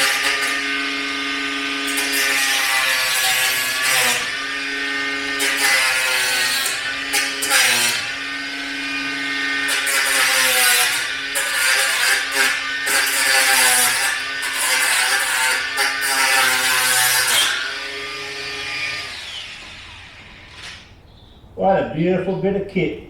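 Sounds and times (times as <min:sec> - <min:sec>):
power tool cutting plastic: 0:00.0 - 0:20.9.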